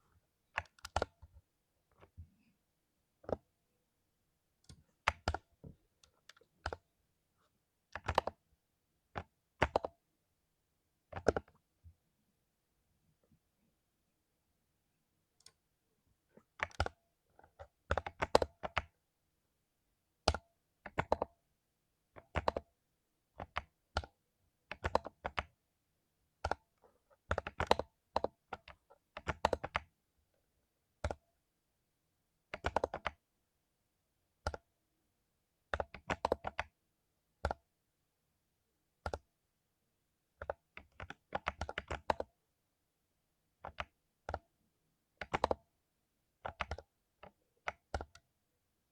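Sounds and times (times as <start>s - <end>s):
mechanical keyboard typing: 0.6s - 1.3s, 4.7s - 6.8s, 7.9s - 8.4s, 9.2s - 9.9s, 11.1s - 11.6s, 16.6s - 19.0s, 20.3s - 21.3s, 22.2s - 22.6s, 23.4s - 24.1s, 24.7s - 25.5s, 26.4s - 29.9s, 31.0s - 31.2s, 32.5s - 33.2s, 35.7s - 36.7s, 39.0s - 39.3s, 40.4s - 42.3s, 43.6s - 44.4s, 45.2s - 45.7s, 46.4s - 48.2s.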